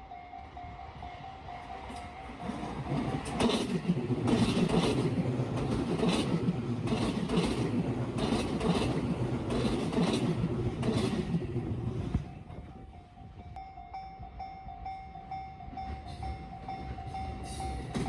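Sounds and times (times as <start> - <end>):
train rumble: 0.0 - 18.0
wheels clacking over rail joints: 1.8 - 12.5.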